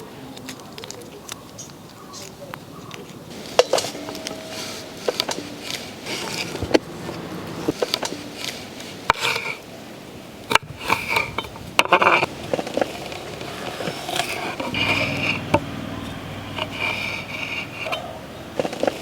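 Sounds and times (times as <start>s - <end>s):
knife scraping: 3.3s - 6.8s, 7.6s - 9.6s, 10.5s - 19.0s.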